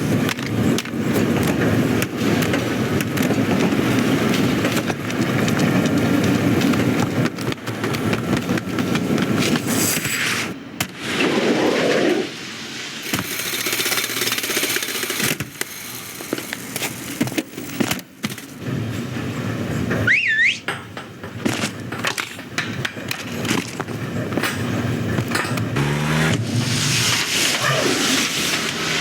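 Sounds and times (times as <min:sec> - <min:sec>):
vehicle and machinery noise: 0:00.0 - 0:10.8, 0:12.8 - 0:29.0
rising whistle-like squeal: 0:20.0 - 0:20.7.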